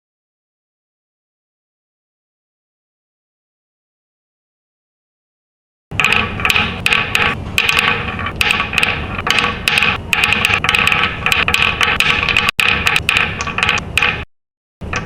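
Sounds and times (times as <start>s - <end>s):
marbles rattling down wooden track: 6.0s - 14.2s.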